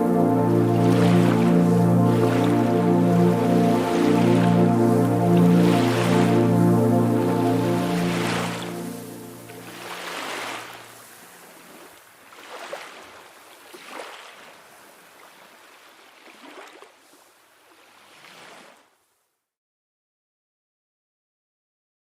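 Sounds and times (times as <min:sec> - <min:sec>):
steady music tones: 0:00.0 - 0:11.0
sea waves washing in: 0:00.0 - 0:19.0.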